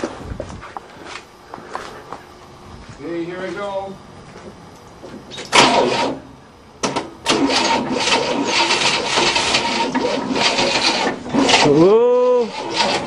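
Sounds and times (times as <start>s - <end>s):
starter motor cranking engine: 5.4s - 13.0s.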